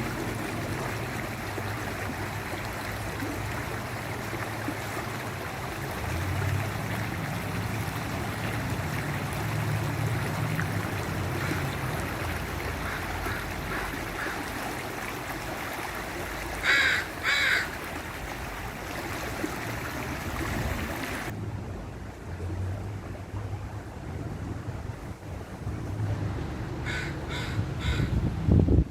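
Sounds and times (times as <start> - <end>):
waterfall rushing: 0.0 - 21.4.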